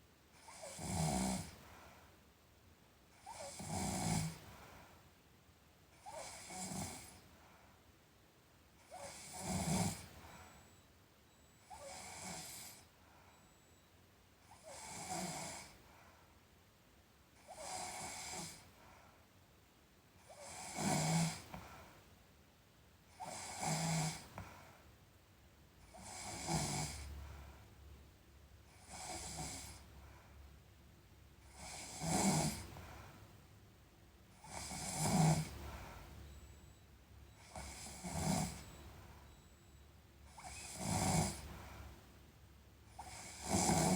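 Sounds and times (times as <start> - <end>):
person snoring: 31.5 - 32.7, 34.4 - 35.7, 37.4 - 38.8, 40.3 - 41.5, 43.0 - 43.9.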